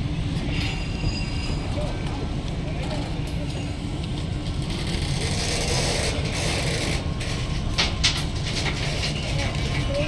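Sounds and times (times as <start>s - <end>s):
train rumbling with rattle: 0.0s - 10.0s.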